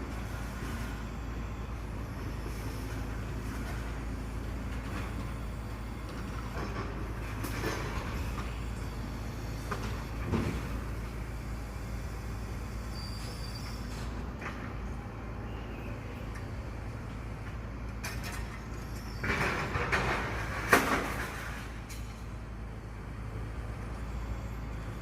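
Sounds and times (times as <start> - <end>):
garbage truck engine rumble: 0.0 - 25.0
faint high squeal: 12.7 - 14.2, 18.4 - 19.9.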